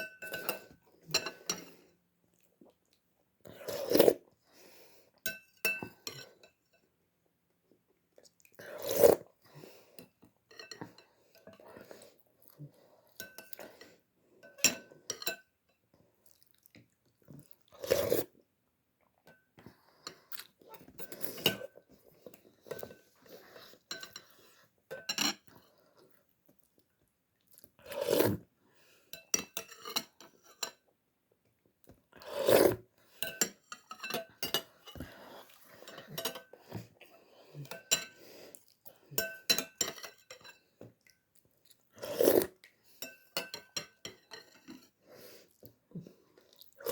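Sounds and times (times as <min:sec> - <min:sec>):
utensil clinking against bowl: 0:33.2 - 0:35.2, 0:39.2 - 0:40.6.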